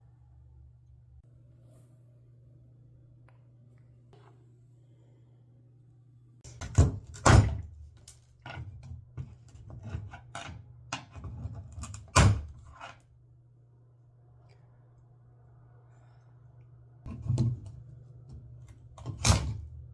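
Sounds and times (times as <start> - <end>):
knocks and scrapes on a valve: 6.5 - 13.0, 17.1 - 19.9.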